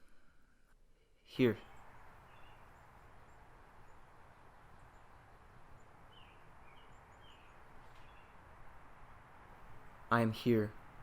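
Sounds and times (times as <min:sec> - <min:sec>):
faint bird chirps: 0:00.0 - 0:08.6
low steady hiss: 0:00.0 - 0:11.0.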